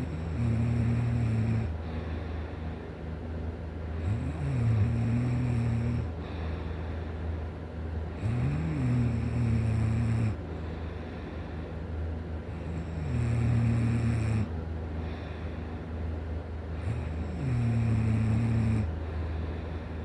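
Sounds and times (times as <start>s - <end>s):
person snoring: 0.0s - 1.8s, 4.0s - 6.4s, 8.2s - 10.4s, 12.5s - 14.6s, 16.8s - 19.0s.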